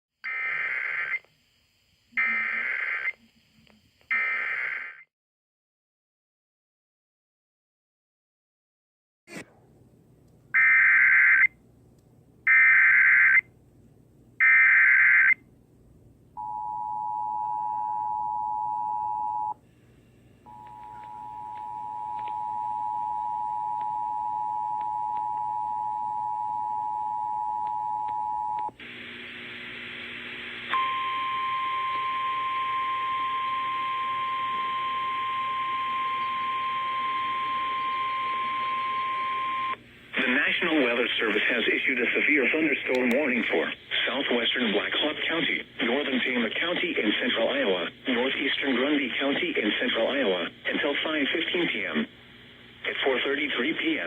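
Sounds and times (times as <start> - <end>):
radio channel hiss: 2.0 - 4.5, 39.8 - 54.0
single-tone warning alarm: 10.6 - 11.5, 12.5 - 13.4, 16.4 - 19.6, 20.5 - 28.7, 30.7 - 39.8
two-tone attention signal: 30.8 - 39.8.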